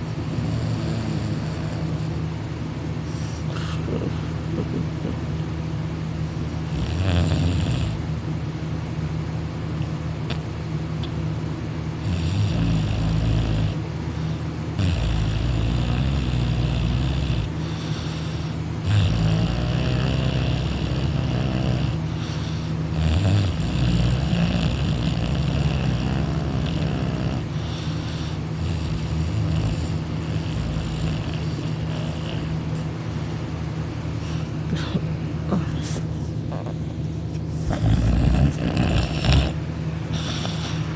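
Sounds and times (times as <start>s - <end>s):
man snoring loudly: 0.3s - 2.1s, 6.7s - 8.0s, 12.0s - 13.8s, 14.8s - 32.6s, 37.7s - 39.6s.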